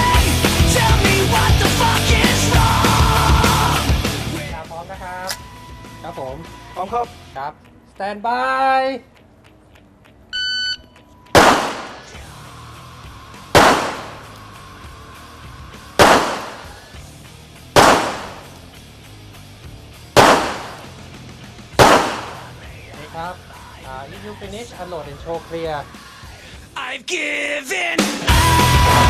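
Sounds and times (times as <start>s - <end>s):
electronic shot timer beep: 10.4s - 11.0s
handgun shots with echo: 11.4s - 12.1s, 13.6s - 14.3s, 16.0s - 16.8s, 17.8s - 18.6s, 20.2s - 21.0s, 21.8s - 22.5s.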